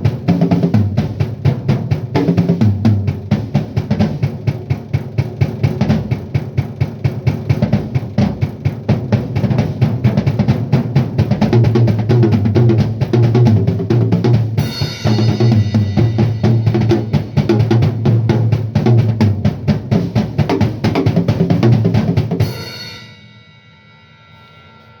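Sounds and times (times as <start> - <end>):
drum kit groove: 0.0 - 23.8
cymbal ringing: 14.6 - 17.4, 22.4 - 25.0.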